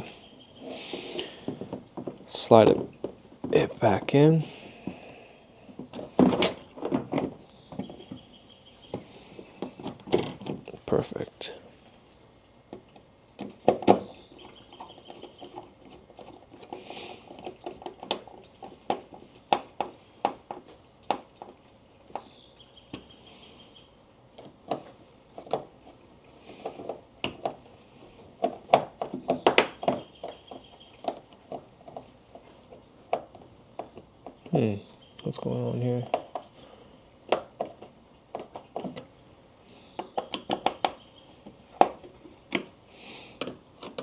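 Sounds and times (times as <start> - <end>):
plastic parts clicking: 43.4 - 44.0.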